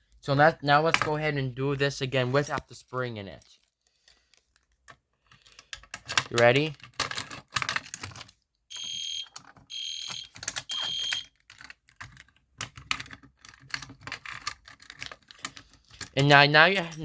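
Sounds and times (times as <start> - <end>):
clicking and rattling handling noise: 0.9 - 1.2, 3.5 - 17.0
fire alarm horn blasts: 8.7 - 11.2.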